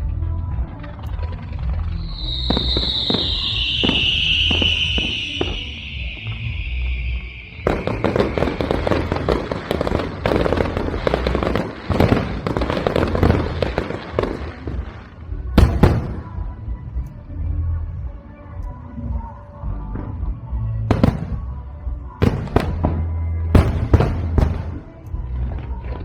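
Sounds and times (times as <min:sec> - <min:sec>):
firework crackle: 0:00.6 - 0:16.5, 0:22.2 - 0:26.0
firework whistle: 0:01.8 - 0:14.1.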